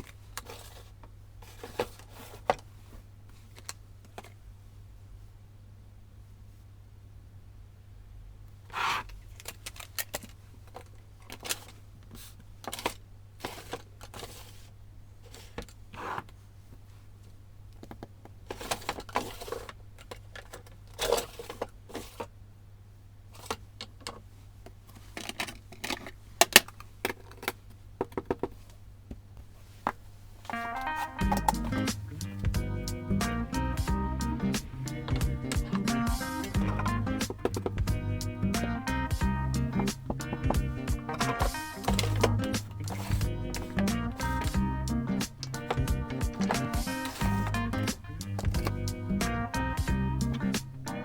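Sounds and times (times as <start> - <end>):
paper rustling: 0.0 - 4.4, 8.7 - 16.3, 18.5 - 22.3, 33.7 - 37.9, 38.5 - 49.3
low steady hum: 30.6 - 51.0
stationery clicks and taps: 30.6 - 51.0.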